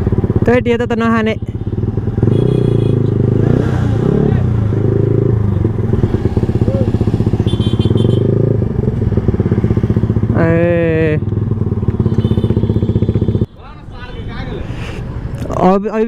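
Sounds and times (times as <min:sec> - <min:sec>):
motorcycle engine running: 0:00.0 - 0:13.5.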